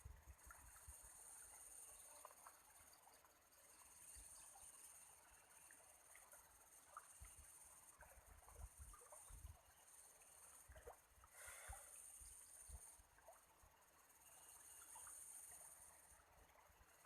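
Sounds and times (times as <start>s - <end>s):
insect chorus: 0.0s - 17.0s.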